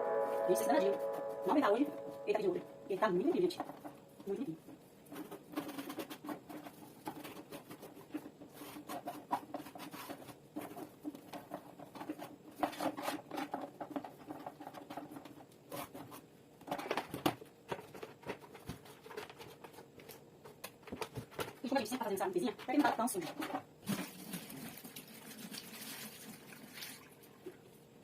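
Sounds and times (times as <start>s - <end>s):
hands scratching and rubbing plastic: 3.1s - 23.7s.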